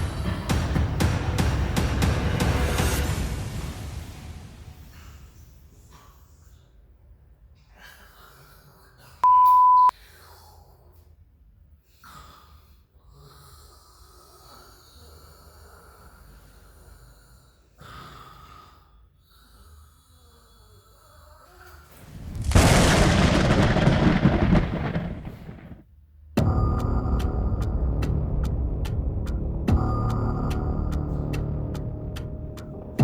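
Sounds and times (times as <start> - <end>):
electronic beep: 9.2 - 9.9.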